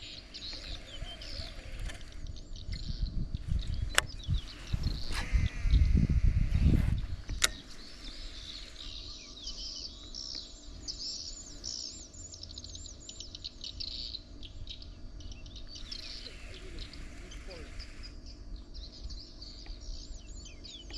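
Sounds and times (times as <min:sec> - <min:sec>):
loud low rumbling: 0:00.0 - 0:09.1
birds chirping: 0:00.0 - 0:20.9
sharp click: 0:07.3 - 0:07.8.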